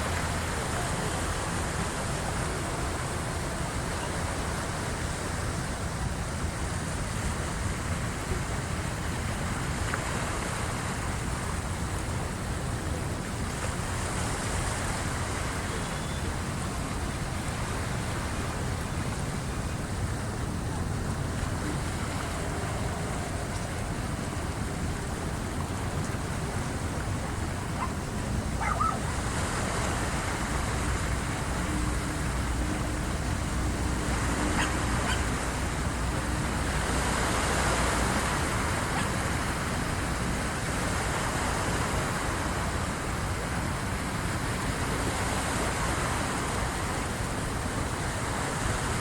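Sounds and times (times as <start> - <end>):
tide washing against shore: 0.0 - 49.0.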